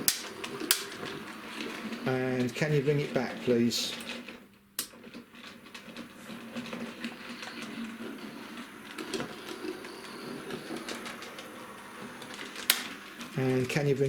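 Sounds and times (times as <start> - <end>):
wheels ticking over rail joints: 0.0 - 14.0
small electric motor whirring: 5.8 - 13.9.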